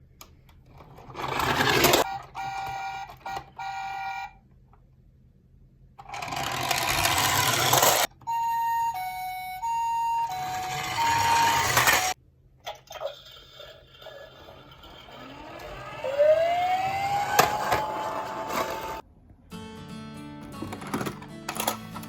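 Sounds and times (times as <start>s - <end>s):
toy truck wheels whirring: 0.8s - 3.8s, 6.0s - 8.6s, 9.6s - 12.2s, 13.0s - 19.0s
electronic toy beeps: 2.0s - 4.4s, 8.2s - 12.2s
two-pitch toy siren: 2.0s - 4.4s, 8.1s - 12.2s, 15.4s - 19.0s.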